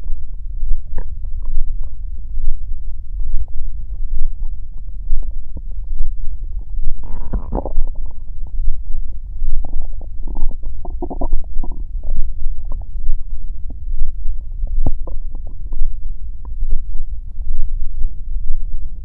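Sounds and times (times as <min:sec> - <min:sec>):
stomach rumbling: 0:00.0 - 0:18.9
stomach gurgling: 0:06.9 - 0:08.6, 0:09.5 - 0:13.0, 0:14.7 - 0:16.7.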